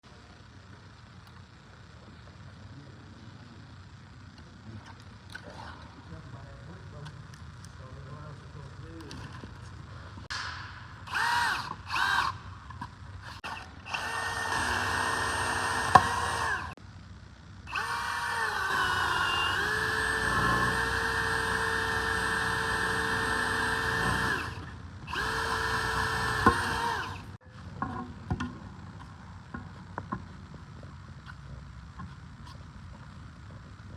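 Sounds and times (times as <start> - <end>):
small electric motor whirring: 11.0 - 16.8, 17.7 - 27.4.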